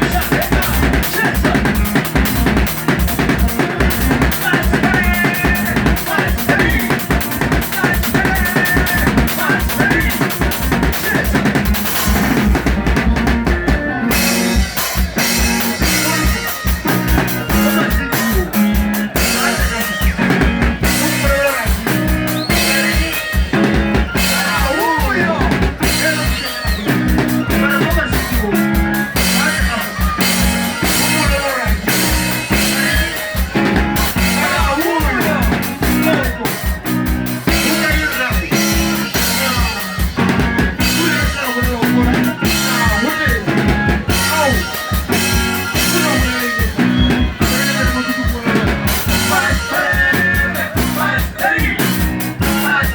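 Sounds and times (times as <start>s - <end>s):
bass line: 0.0s - 52.9s
drum kit fast beat: 0.0s - 52.9s
sliding melodic parts: 0.0s - 52.9s.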